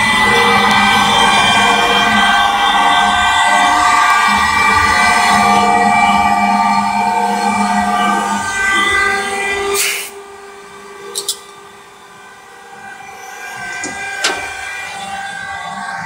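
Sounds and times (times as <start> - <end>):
cnc machine whining: 0.0 - 16.0.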